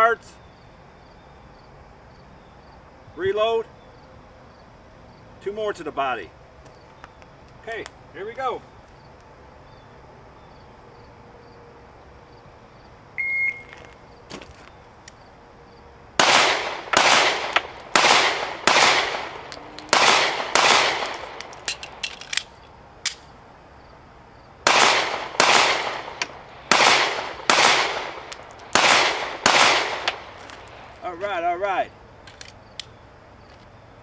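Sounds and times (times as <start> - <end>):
short beep: 13.2 - 13.9
pistol shots: 16.2 - 22.0, 24.6 - 30.8
magazine reload clicks: 18.7 - 23.3, 32.2 - 33.0.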